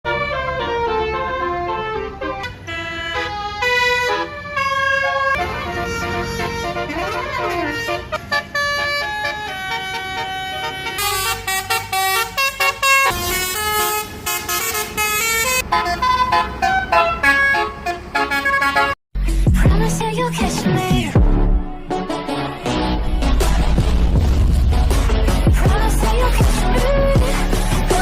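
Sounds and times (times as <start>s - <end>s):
musical bus horn tune: 0.0s - 19.0s.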